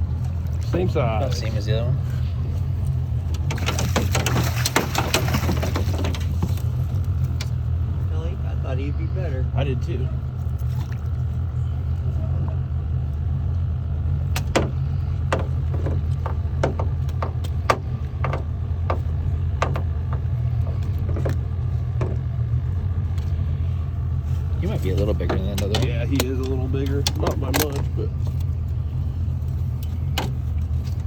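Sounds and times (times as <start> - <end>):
boat motor idling: 0.0 - 31.0
sharp knocks and clatters: 3.3 - 7.6, 14.3 - 22.3.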